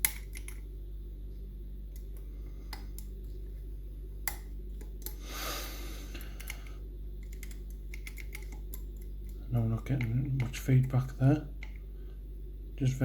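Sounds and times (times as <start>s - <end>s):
low electrical hum: 0.0s - 13.0s
metallic clicks of lock picks: 7.2s - 11.0s.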